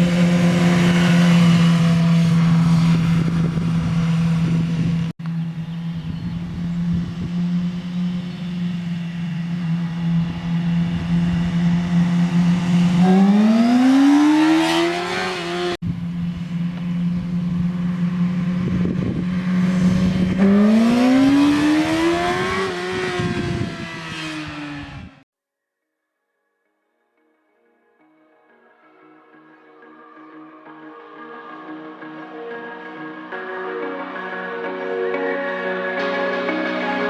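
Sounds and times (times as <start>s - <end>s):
motorcycle engine idling and revving: 0.0s - 25.2s.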